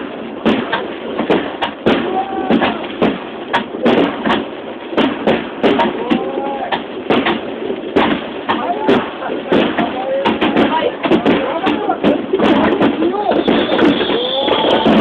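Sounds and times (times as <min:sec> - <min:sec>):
fireworks bursting: 0:00.0 - 0:15.0
murmur of spectators: 0:01.9 - 0:03.0, 0:05.6 - 0:15.0.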